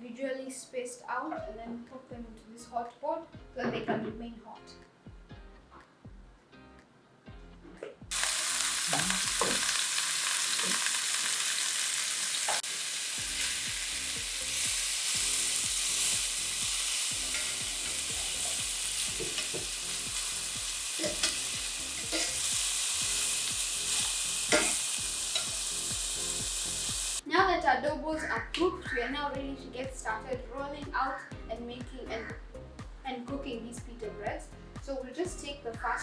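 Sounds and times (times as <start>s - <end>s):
chicken sizzling in hot oil: 8.1s - 27.2s.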